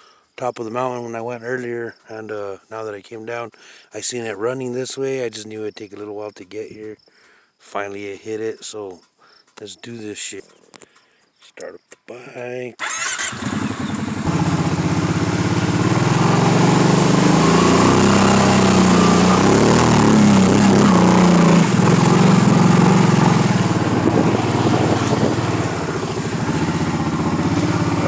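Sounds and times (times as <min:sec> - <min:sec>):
atv engine driving through water: 0:12.8 - 0:28.0.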